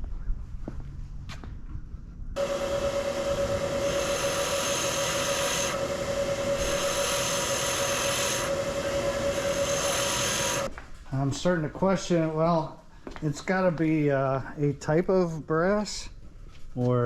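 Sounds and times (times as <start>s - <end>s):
wire wheel grinder on brass: 2.4s - 10.7s.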